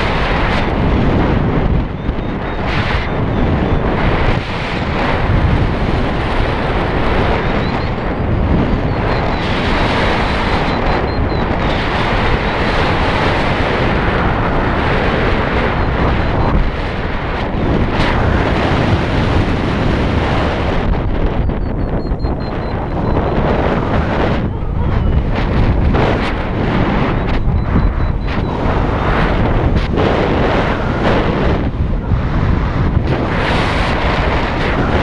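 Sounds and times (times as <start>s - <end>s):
wind buffeting microphone: 0.0s - 35.0s.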